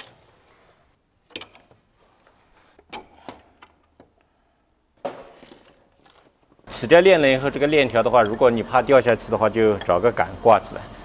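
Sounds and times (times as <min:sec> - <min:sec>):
hand tools clicking and clinking: 0:05.4 - 0:06.5.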